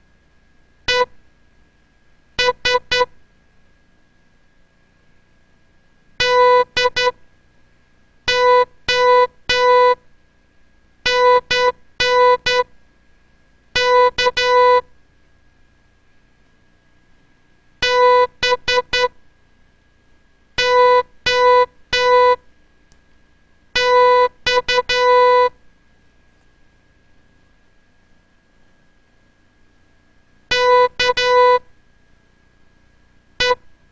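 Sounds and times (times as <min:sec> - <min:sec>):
morse code beeps: 0:00.9 - 0:01.1, 0:02.4 - 0:03.1, 0:06.2 - 0:07.2, 0:08.3 - 0:10.0, 0:11.1 - 0:12.7, 0:13.8 - 0:14.8, 0:17.8 - 0:19.2, 0:20.6 - 0:22.4, 0:23.8 - 0:25.6, 0:30.5 - 0:31.7, 0:33.4 - 0:33.6.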